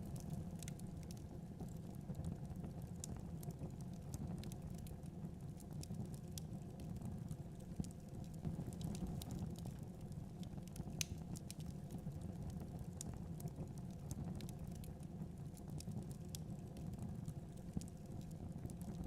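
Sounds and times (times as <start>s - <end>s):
wood fire crackling: 0.0s - 19.0s.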